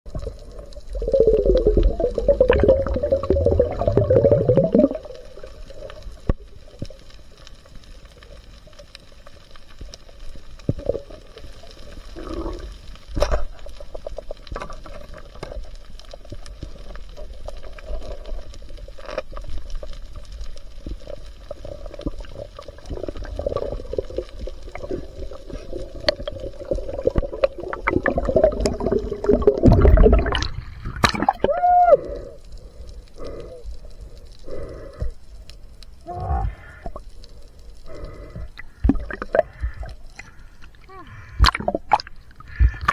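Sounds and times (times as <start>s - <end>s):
underwater bubbling and sloshing: 0.0s - 42.9s.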